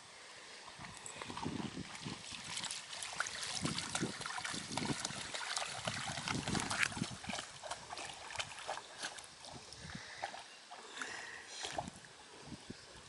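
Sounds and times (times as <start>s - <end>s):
dog splashing through water: 1.2s - 9.6s.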